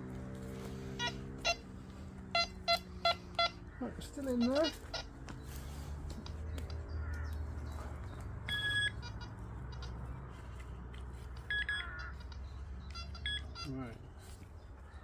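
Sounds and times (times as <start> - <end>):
metal detector beeping: 0.9 - 6.4, 8.4 - 10.1, 11.4 - 14.0.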